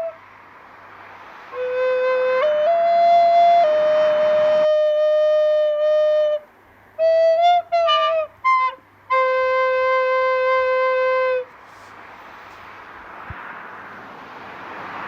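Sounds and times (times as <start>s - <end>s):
flute-like wind instrument: 0.0s - 0.2s, 1.5s - 11.6s
soft hiss: 0.0s - 14.6s.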